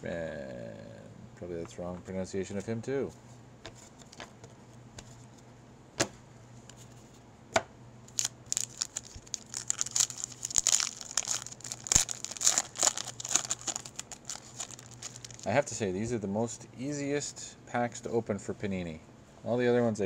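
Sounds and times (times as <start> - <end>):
wrapper crinkling: 8.1 - 15.6.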